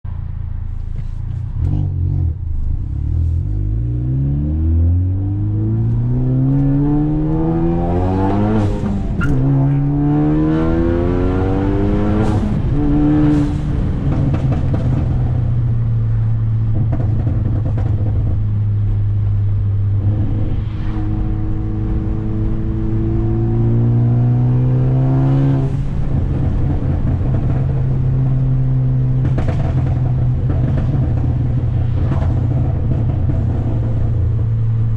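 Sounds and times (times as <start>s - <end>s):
car engine revving: 1.0s - 34.9s
exhaust pops and crackles: 12.2s - 19.4s, 25.6s - 34.9s.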